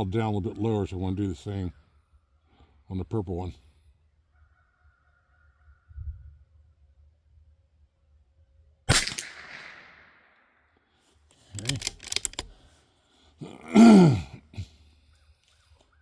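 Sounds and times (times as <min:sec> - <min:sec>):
rifle shot with echo: 0:08.9 - 0:10.4
rifle bolt clicks: 0:11.6 - 0:12.6.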